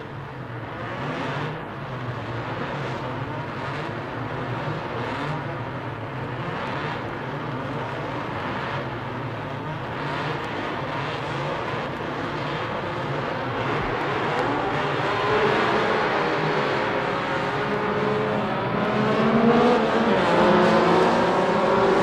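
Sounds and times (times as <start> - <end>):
race car engines: 0.0 - 22.0.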